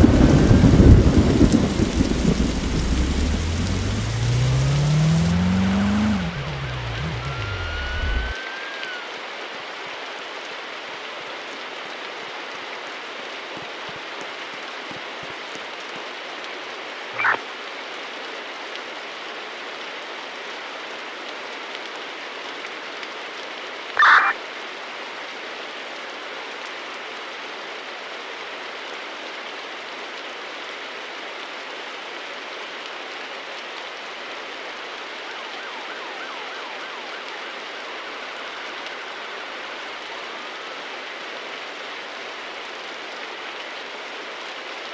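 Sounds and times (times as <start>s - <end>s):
fire engine siren chirps: 0.0s - 9.4s, 17.2s - 17.4s, 24.0s - 24.4s, 34.7s - 41.2s
rain hissing: 0.0s - 9.5s, 35.0s - 44.4s.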